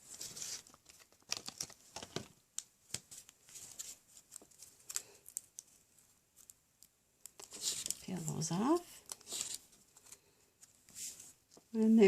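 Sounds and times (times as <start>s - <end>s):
paper rustling and tapping: 0.0s - 5.7s.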